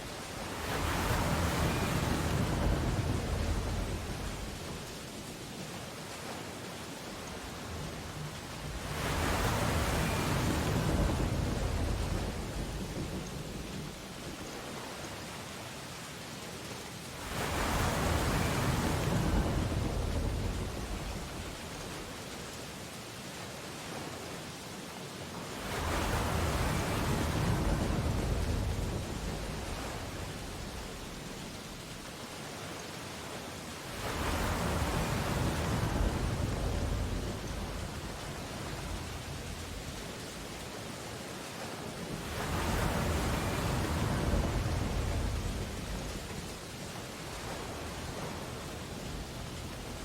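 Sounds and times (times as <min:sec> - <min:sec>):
steady rain: 0:00.0 - 0:50.0
thunder rumbling: 0:00.9 - 0:05.0, 0:07.9 - 0:14.6, 0:17.5 - 0:22.1, 0:25.8 - 0:31.6, 0:34.1 - 0:40.0.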